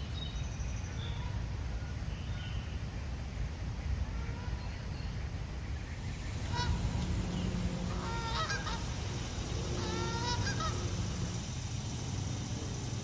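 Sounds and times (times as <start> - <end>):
steady low rumble: 5.9 - 13.0
geese honking: 6.0 - 13.0.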